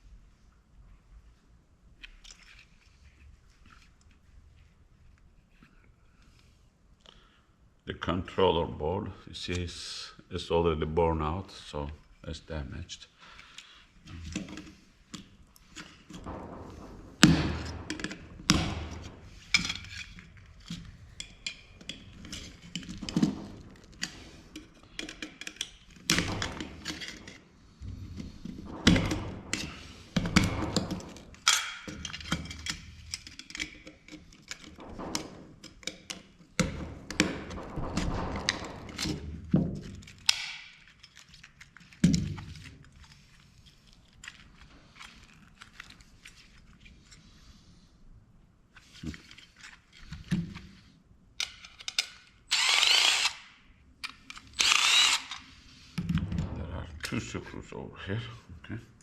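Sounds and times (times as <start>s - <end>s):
camera parts knocking and scraping: 19.4s - 27.4s, 54.0s - 56.2s.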